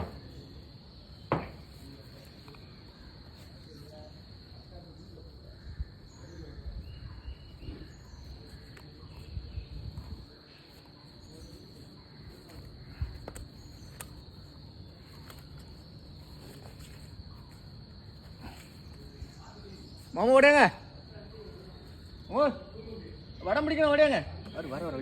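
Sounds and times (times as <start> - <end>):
insects trilling: 0.0 - 25.0
faint clicks: 13.2 - 14.3.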